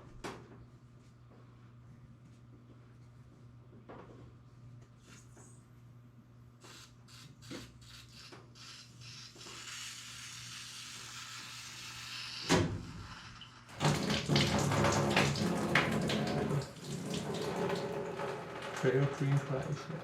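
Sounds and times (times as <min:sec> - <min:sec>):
water splashing from pipe: 0:13.3 - 0:19.9.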